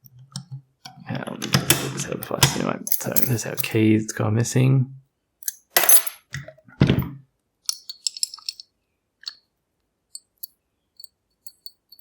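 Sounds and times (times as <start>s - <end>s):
light metallic clicks and clinks: 7.7s - 9.4s, 10.1s - 12.0s.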